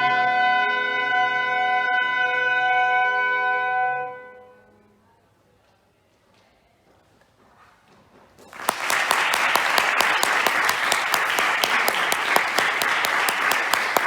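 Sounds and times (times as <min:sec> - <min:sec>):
audience applause: 0:08.5 - 0:14.0.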